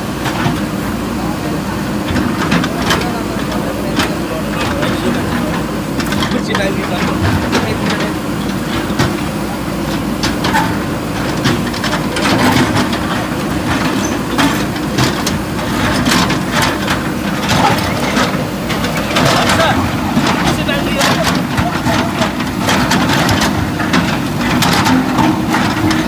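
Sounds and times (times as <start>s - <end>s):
diesel engine running: 0.0s - 26.0s
demolition knocks and crunching: 2.0s - 26.0s.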